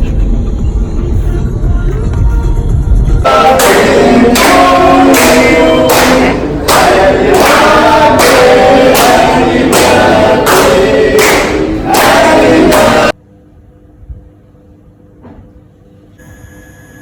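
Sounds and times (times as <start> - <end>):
music with choir singing: 1.0 - 13.2.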